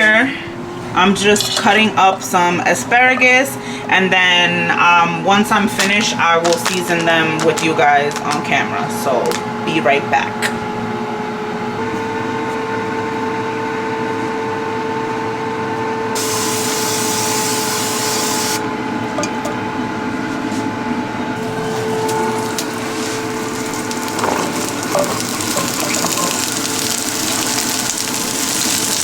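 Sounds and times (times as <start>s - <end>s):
appliance fan humming: 0.0s - 29.0s
hiss: 16.2s - 18.6s.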